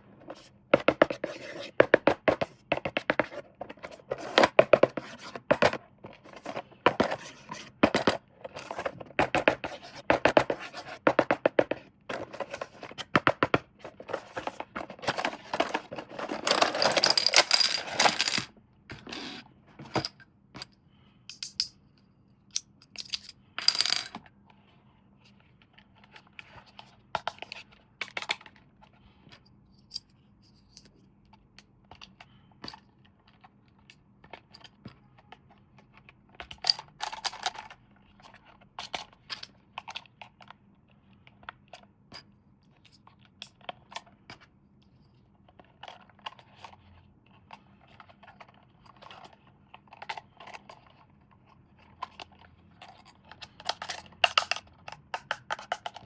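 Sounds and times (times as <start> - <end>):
plastic and cardboard crinkling: 12.1 - 18.5
clicks and taps on packaging: 53.7 - 56.0.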